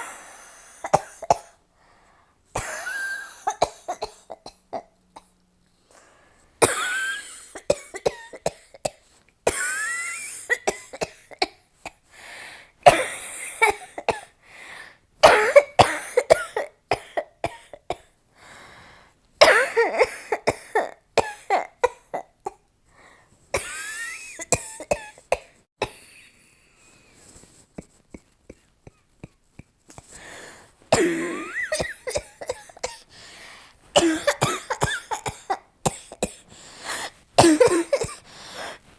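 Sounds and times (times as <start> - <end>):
woman coughing: 2.6 - 4.9, 6.6 - 8.8, 12.9 - 14.3, 15.2 - 17.7, 19.4 - 22.6, 23.6 - 26.2, 30.9 - 33.0, 34.0 - 36.4, 37.4 - 38.2.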